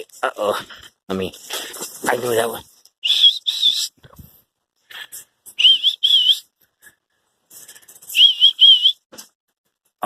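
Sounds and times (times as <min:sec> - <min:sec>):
person whistling: 0:03.0 - 0:04.0, 0:05.5 - 0:06.5, 0:08.1 - 0:09.1.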